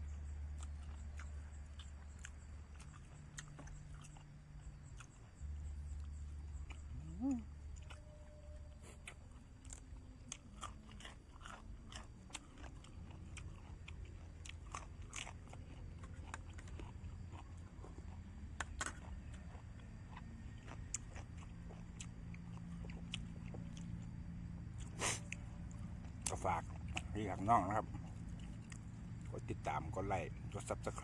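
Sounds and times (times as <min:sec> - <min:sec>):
person chewing food: 0:00.1 - 0:29.7.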